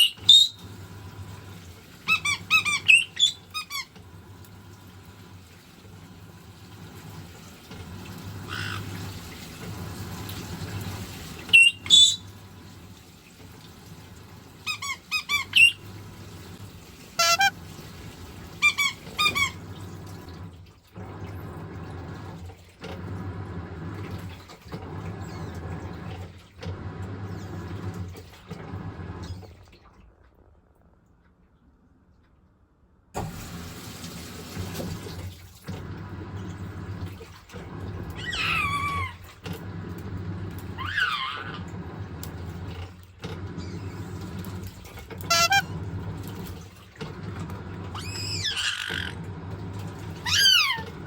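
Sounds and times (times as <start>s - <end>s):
parrot squawking: 0.0s - 0.6s, 2.0s - 3.9s, 8.5s - 9.0s, 11.5s - 12.3s, 14.6s - 15.8s, 17.2s - 17.5s, 18.6s - 19.6s, 38.1s - 39.3s, 40.8s - 41.6s, 45.3s - 45.7s, 47.9s - 49.2s, 50.2s - 51.0s
washing machine running: 0.0s - 30.3s, 33.2s - 51.0s.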